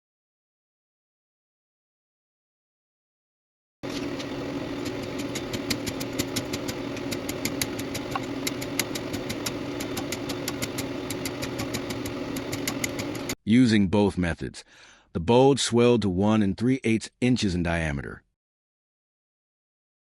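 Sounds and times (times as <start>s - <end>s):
mechanical drone with low hum: 3.8s - 13.4s.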